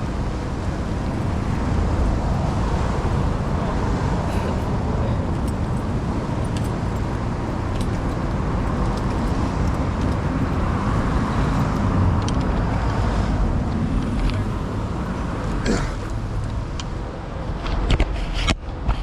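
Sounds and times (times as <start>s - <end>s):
cars passing by: 0.0s - 19.0s.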